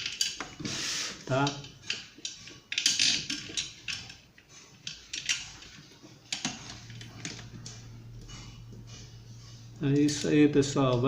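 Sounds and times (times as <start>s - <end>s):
low steady hum: 5.1s - 11.0s.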